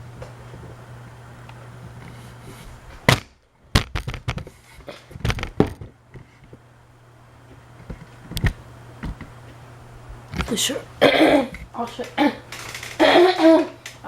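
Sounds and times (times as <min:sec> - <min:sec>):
steady low hum: 0:00.0 - 0:14.0
sharp clicks and knocks: 0:03.1 - 0:04.5, 0:05.2 - 0:06.6.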